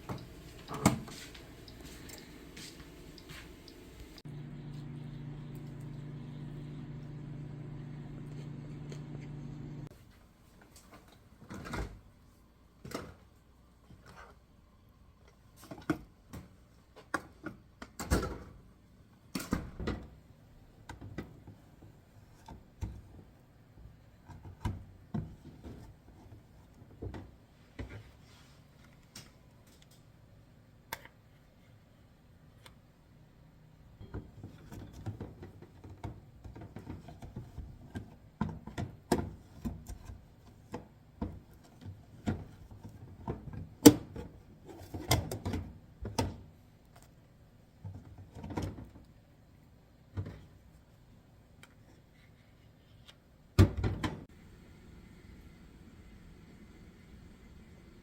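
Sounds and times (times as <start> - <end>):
faint low hum: 0.0 - 9.9.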